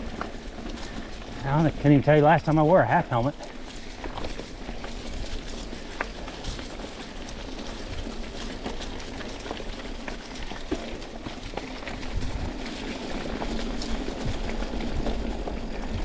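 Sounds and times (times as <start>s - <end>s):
bike tyres crunching over grit: 0.0s - 16.0s
small clicks and rattles: 0.0s - 16.0s
wind rumble on microphone: 11.9s - 16.0s.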